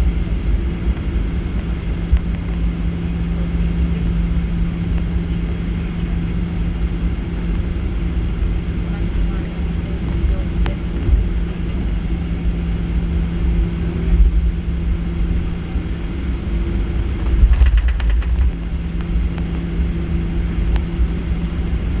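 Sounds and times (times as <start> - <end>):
jet engine hum: 15.0 - 22.0
airframe and wheels rumble: 16.9 - 22.0
sharp clicks or rattles: 17.2 - 19.6.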